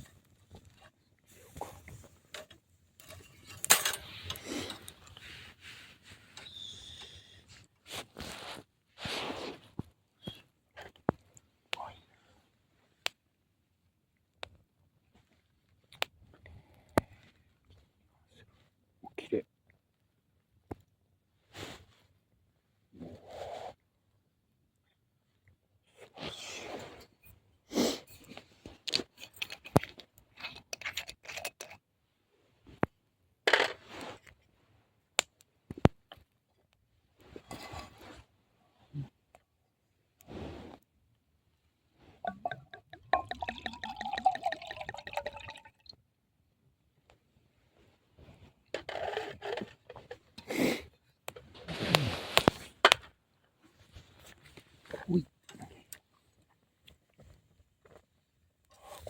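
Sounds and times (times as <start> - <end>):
rustling and scraping: 0.0 - 9.9, 33.5 - 34.8, 37.2 - 39.1, 47.7 - 50.8, 51.4 - 55.0.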